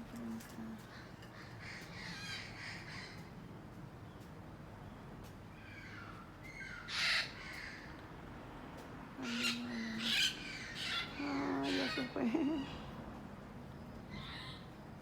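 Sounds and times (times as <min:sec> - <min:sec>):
crows cawing: 0:00.9 - 0:03.3, 0:05.6 - 0:08.0
parakeets squawking: 0:09.2 - 0:12.8.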